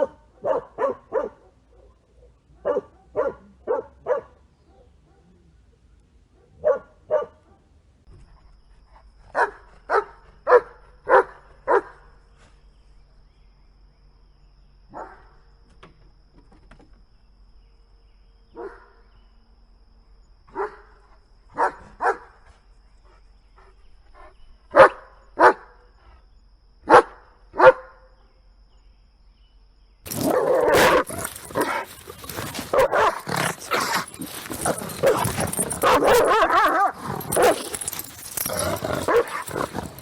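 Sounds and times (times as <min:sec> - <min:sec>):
dog barking: 0:00.0 - 0:05.4, 0:06.3 - 0:07.7, 0:09.3 - 0:12.0, 0:14.9 - 0:15.3, 0:18.6 - 0:19.0, 0:20.5 - 0:20.9, 0:21.5 - 0:22.3, 0:24.7 - 0:25.8, 0:26.8 - 0:28.0, 0:30.1 - 0:40.0.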